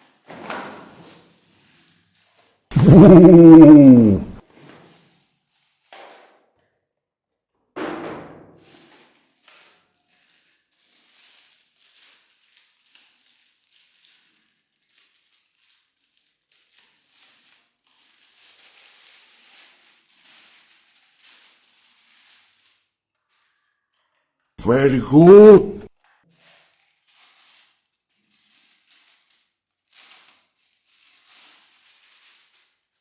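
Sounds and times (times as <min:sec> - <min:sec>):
plastic packaging rustling: 0:08.7 - 0:23.6, 0:26.4 - 0:33.0.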